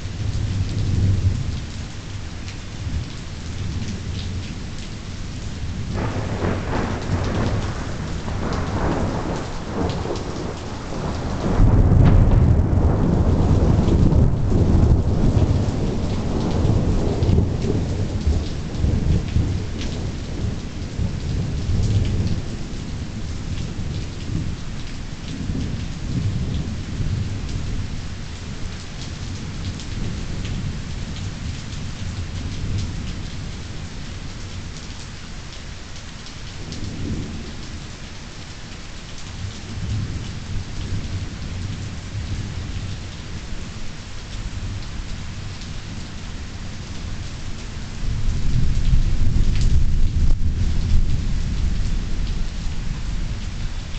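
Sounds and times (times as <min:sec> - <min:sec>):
steady rain: 0:00.0 - 0:53.9
thunder rumbling: 0:05.8 - 0:22.8, 0:48.0 - 0:53.5.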